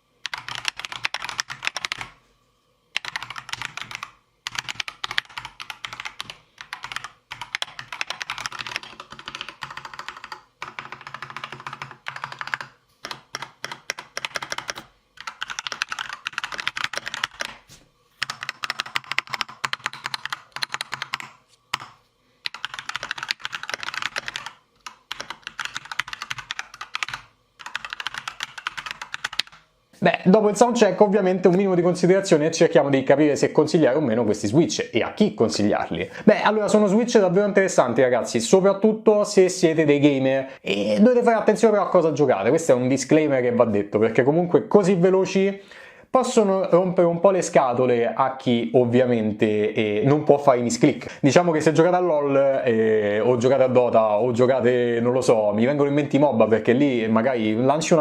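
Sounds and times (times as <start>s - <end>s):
mechanical keyboard typing: 0.2s - 2.2s, 3.0s - 29.7s.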